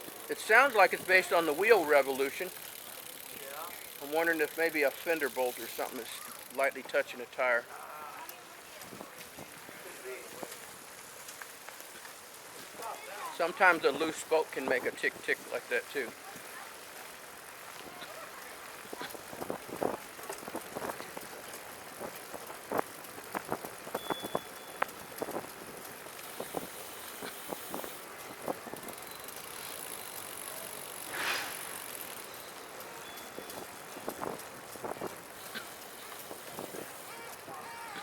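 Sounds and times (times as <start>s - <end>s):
trike rolling: 0.0s - 38.0s
sharp ticks from wheel: 21.5s - 37.4s
short hiss: 31.1s - 31.8s.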